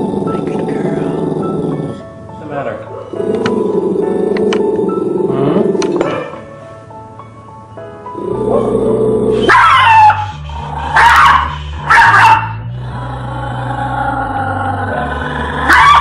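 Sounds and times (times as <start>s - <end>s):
background music with bass line: 8.1s - 16.0s
dog barking: 9.4s - 10.3s, 11.0s - 12.6s, 15.7s - 16.0s.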